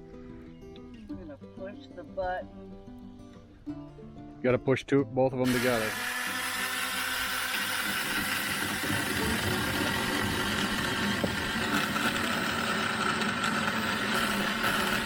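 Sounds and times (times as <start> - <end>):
electric chainsaw sawing branch: 5.4 - 15.0.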